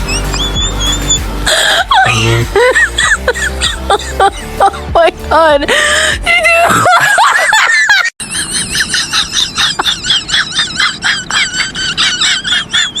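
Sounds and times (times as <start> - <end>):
high-pitched squeaky chirps: 0.0 - 1.4.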